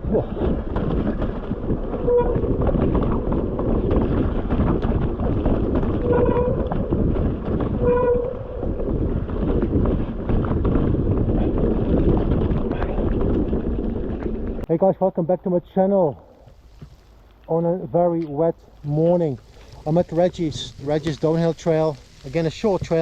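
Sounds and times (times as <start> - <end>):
wind buffeting microphone: 0.0 - 14.7
short horn toots: 6.0 - 6.6, 7.8 - 8.4.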